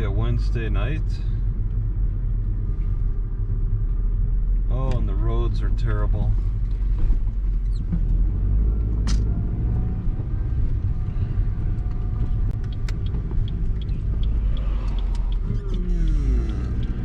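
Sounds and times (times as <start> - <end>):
car engine: 0.0 - 17.0
road rumble: 0.0 - 17.0.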